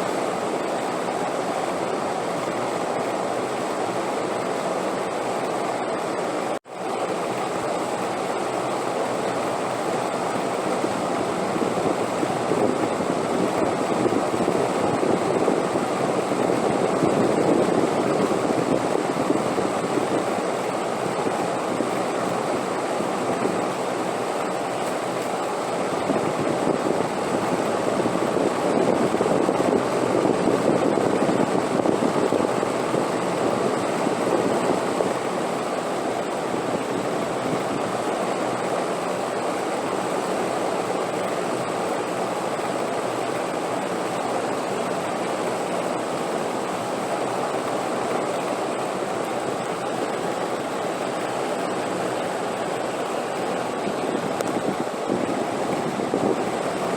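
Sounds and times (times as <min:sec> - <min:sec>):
rushing wind: 0:00.0 - 0:56.9.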